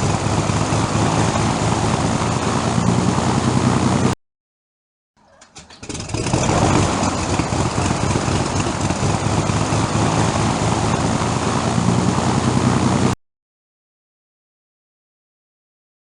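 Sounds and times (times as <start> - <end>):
aircraft engine cranking: 0.0 - 4.2, 5.3 - 13.2
propeller aircraft engine running: 0.0 - 4.2, 5.5 - 13.2.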